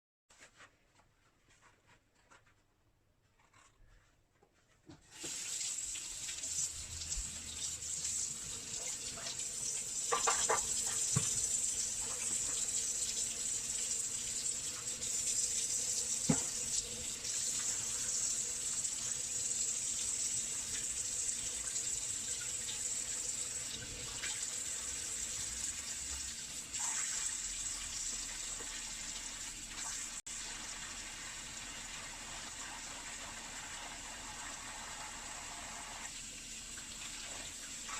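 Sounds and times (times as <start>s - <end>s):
tap water running into sink: 5.0s - 37.9s
knocks of items in sink: 10.1s - 11.4s, 16.2s - 16.6s.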